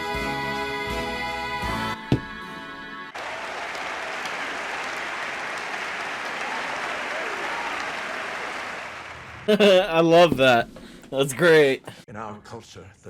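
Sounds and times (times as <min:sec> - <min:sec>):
audience applauding: 0:03.2 - 0:10.6.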